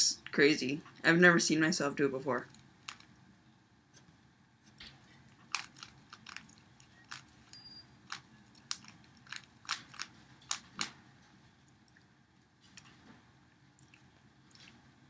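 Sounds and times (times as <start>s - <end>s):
puzzle cube clicking: 5.4s - 11.0s.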